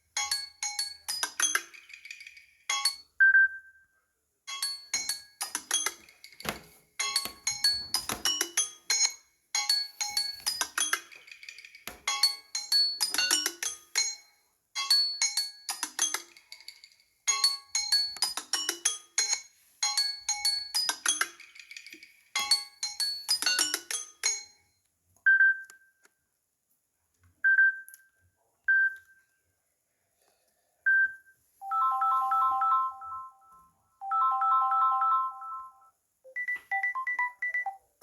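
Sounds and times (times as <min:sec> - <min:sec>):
tablet ringtone melody: 0:31.6 - 0:37.8.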